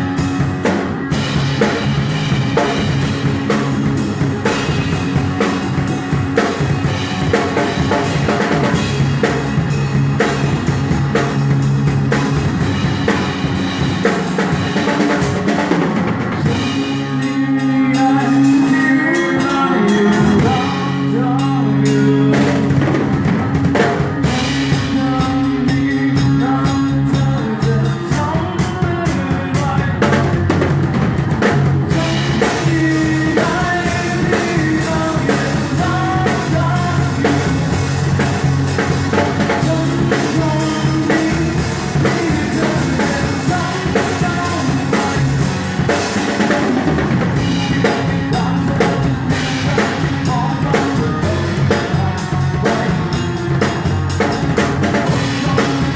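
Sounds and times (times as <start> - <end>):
drum kit pounding: 0.0 - 55.9
rock band playing live: 0.0 - 55.9
person singing: 14.0 - 30.9, 31.8 - 55.9.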